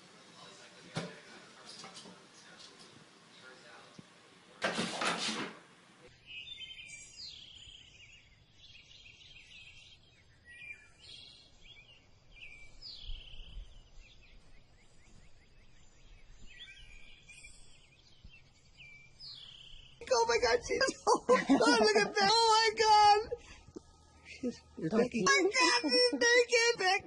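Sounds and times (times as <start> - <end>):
birds chirping and singing: 6.1 - 27.0.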